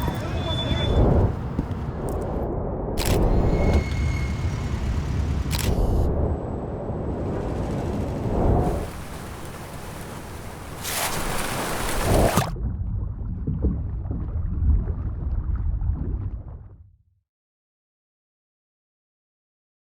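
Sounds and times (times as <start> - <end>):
low traffic rumble: 0.0 - 12.2.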